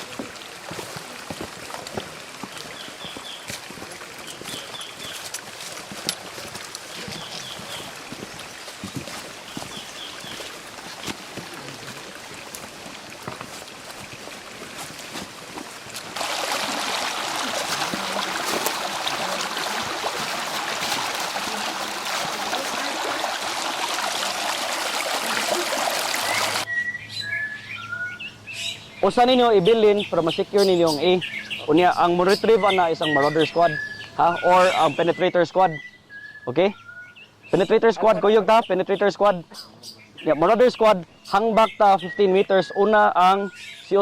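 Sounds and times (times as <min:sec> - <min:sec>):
stream water running: 0:00.0 - 0:26.7, 0:28.9 - 0:35.8.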